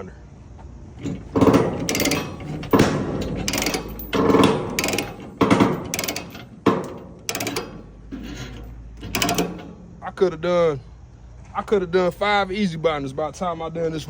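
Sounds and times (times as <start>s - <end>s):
ratchet binder pawl clicking: 1.0s - 10.0s.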